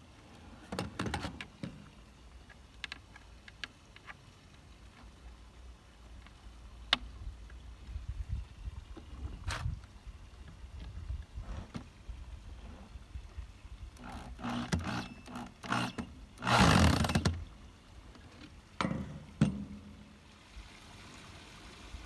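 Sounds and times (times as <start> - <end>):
electric drill driving screws: 14.0 - 17.3.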